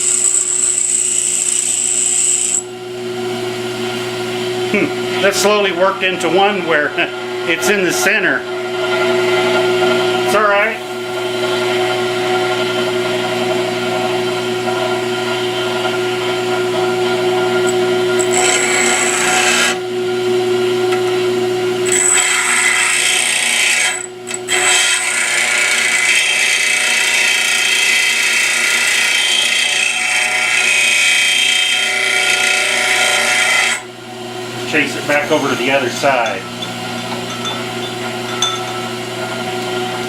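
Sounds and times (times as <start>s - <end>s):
grinder motor hum: 0.0s - 2.7s, 33.8s - 40.0s.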